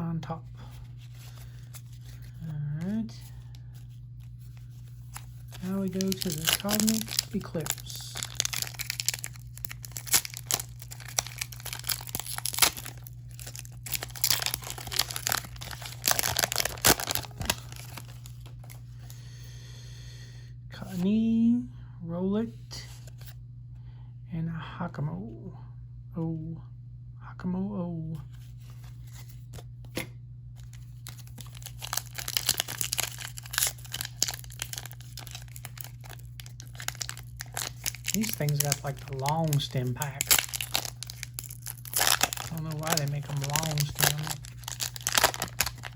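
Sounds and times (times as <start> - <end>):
steady low hum: 0.0 - 45.9
foil wrapper crinkling and tearing: 4.2 - 18.9, 30.6 - 45.9.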